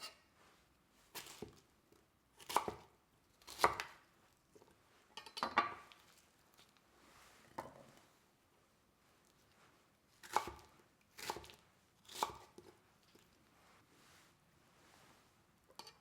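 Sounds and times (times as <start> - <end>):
knife cutting pineapple: 10.2 - 12.8.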